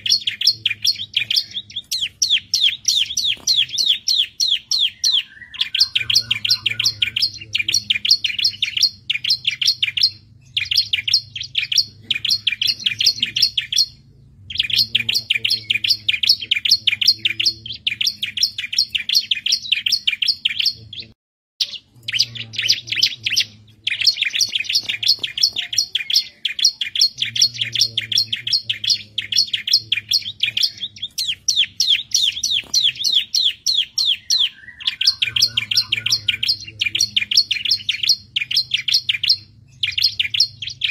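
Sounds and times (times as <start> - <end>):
faint low hum: 0.0 - 40.9.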